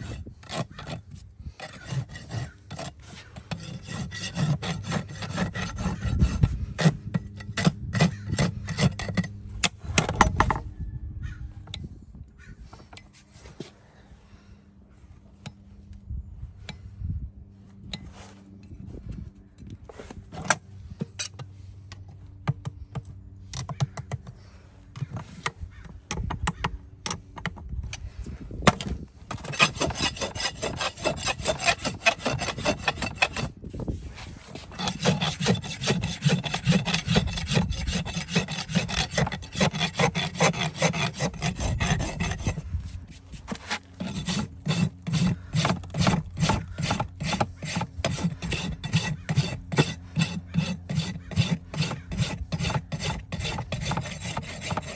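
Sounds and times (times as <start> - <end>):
file rasping back and forth: 0.0 - 9.4, 28.7 - 54.9.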